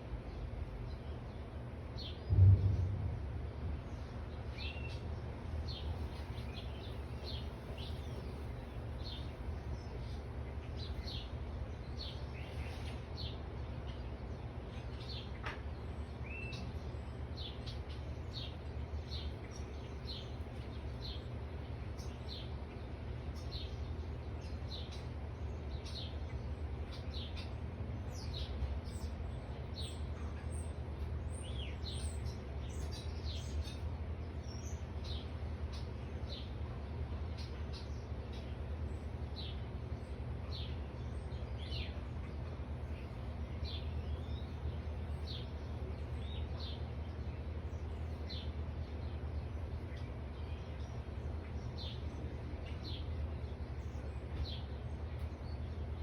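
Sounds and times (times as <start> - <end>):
steady low rumble: 0.0 - 12.4
songbirds chirping: 0.0 - 56.0.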